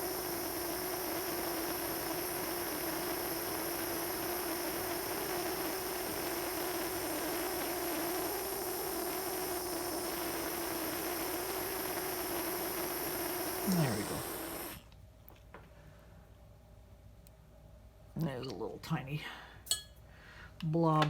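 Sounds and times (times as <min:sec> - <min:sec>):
soldering torch flame hissing: 0:00.0 - 0:14.9.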